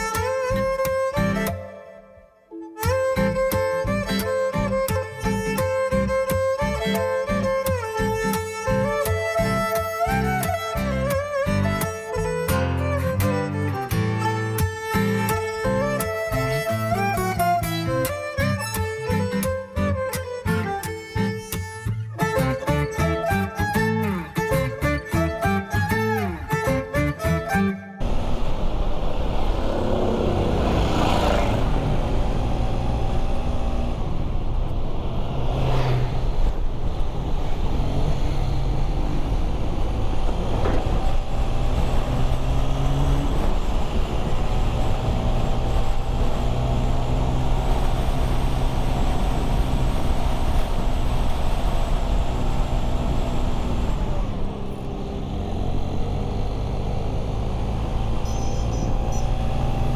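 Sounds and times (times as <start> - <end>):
road traffic noise: 28.0 - 59.9
vehicles passing: 28.0 - 59.9.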